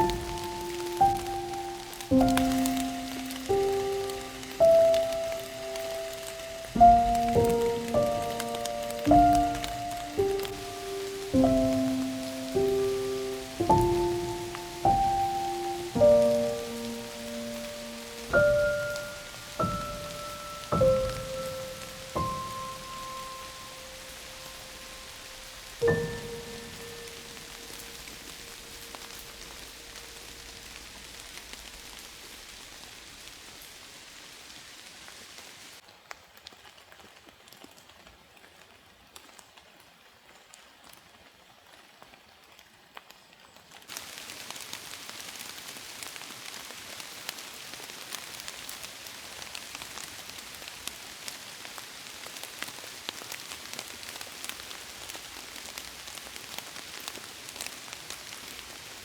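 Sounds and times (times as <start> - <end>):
raindrops ticking: 0.0 - 33.7
rain falling: 0.0 - 59.0.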